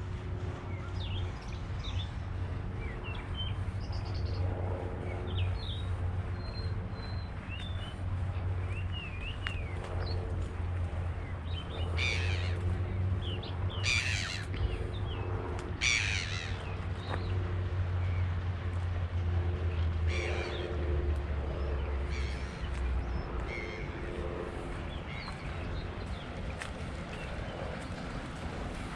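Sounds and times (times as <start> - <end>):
steady low hum: 0.0 - 28.9
birds cawing harshly: 11.9 - 12.8, 13.7 - 14.8, 15.8 - 17.1, 20.1 - 20.7, 22.1 - 22.7.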